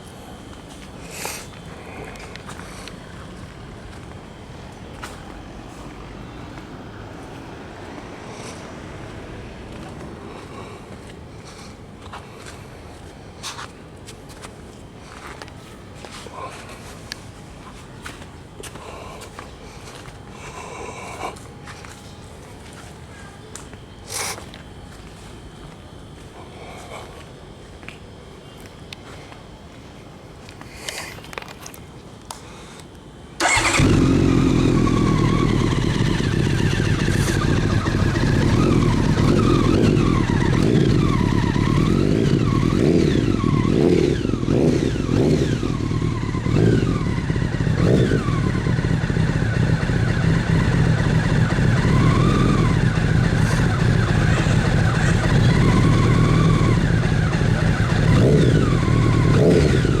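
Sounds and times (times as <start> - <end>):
motorcycle engine starting and idling: 33.4 - 60.0.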